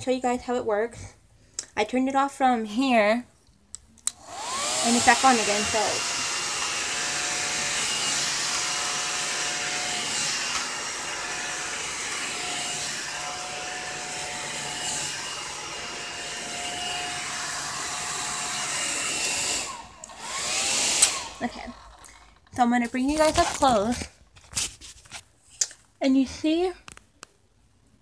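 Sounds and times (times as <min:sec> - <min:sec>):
hot-air brush blowing air: 0:04.1 - 0:22.6.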